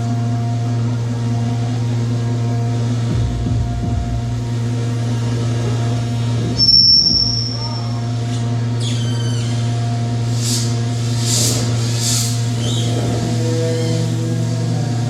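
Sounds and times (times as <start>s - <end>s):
hissing electronic noise: 0.0s - 15.0s
low electronic drone: 0.0s - 15.0s
piercing high electronic tone: 6.4s - 14.9s
stepped falling electronic squeal: 6.6s - 8.0s.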